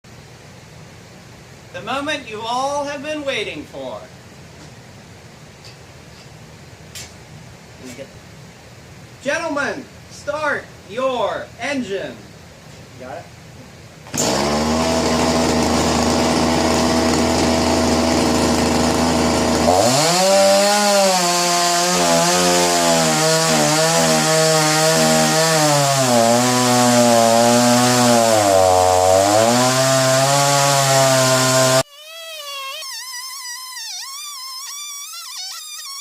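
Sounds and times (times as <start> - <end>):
chainsaw cutting a log: 14.1 - 36.0.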